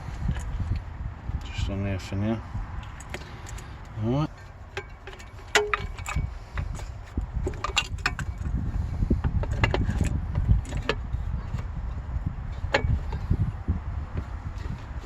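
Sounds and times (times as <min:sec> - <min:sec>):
low rumble: 0:00.0 - 0:01.8, 0:05.9 - 0:15.0.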